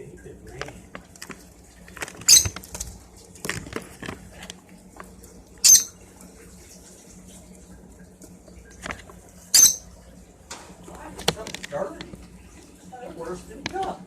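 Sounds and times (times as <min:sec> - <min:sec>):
lovebirds squawking: 0:02.2 - 0:02.7, 0:05.6 - 0:06.0, 0:09.6 - 0:09.9
light scratching and clicking: 0:10.5 - 0:12.7.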